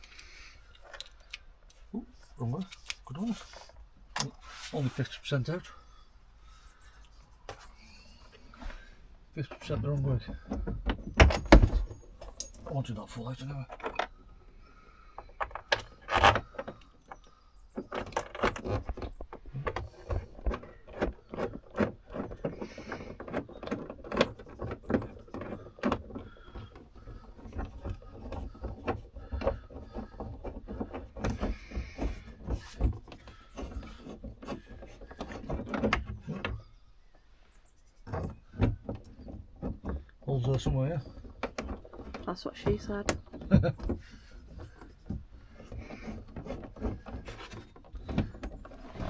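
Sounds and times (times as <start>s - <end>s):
plastic trim clicking and rattling: 15.2s - 36.6s.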